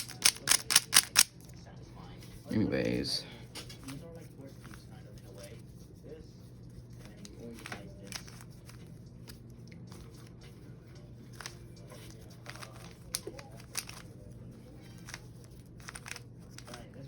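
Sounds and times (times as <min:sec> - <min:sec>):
puzzle cube clicking and scraping: 0:00.0 - 0:01.3, 0:07.1 - 0:08.8, 0:11.4 - 0:14.2, 0:14.9 - 0:16.9
low steady hum: 0:00.0 - 0:17.0.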